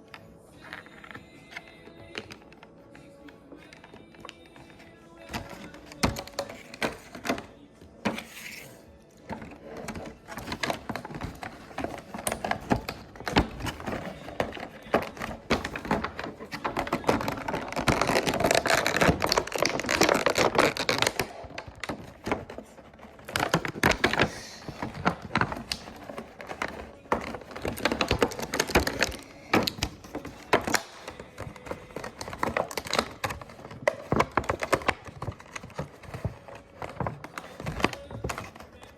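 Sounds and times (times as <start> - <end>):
plastic packaging clicks and crinkling: 0.0 - 38.9.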